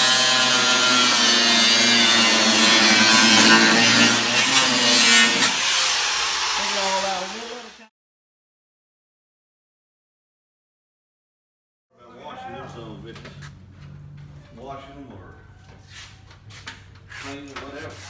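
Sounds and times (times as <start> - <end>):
power tool humming: 0.0 - 7.9.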